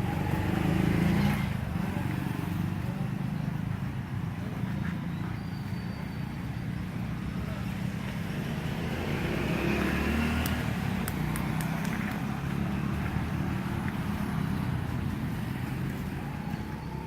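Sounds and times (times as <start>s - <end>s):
rumble of motor traffic: 0.0s - 17.0s
sharp clicks: 10.4s - 12.2s.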